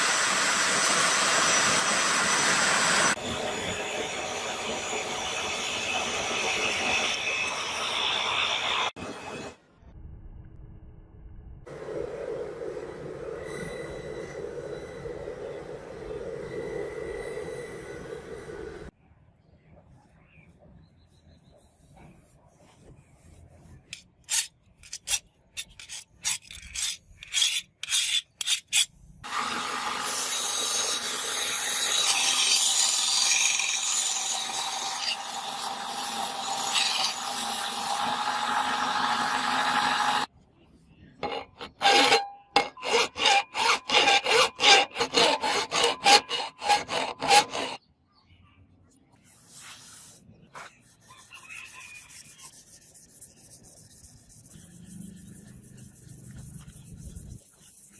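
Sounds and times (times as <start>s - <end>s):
steel blade rasping: 23.9s - 28.9s, 30.0s - 38.6s, 41.2s - 47.8s.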